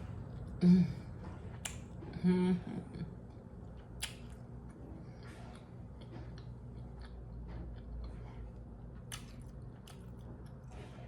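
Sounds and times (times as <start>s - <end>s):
chewing mouth sounds: 5.6s - 10.8s.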